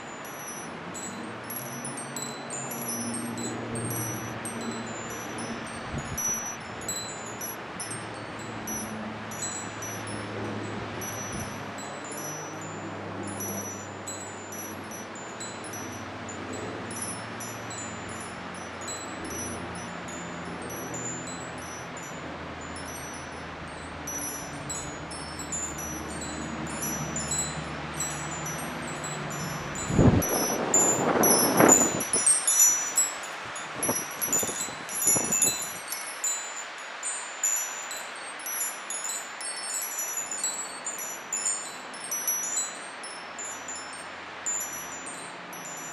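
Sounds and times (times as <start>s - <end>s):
wind chimes tinkling: 0.0s - 45.9s
wind gusts hitting microphone: 14.1s - 36.1s
wind rushing: 28.9s - 32.3s.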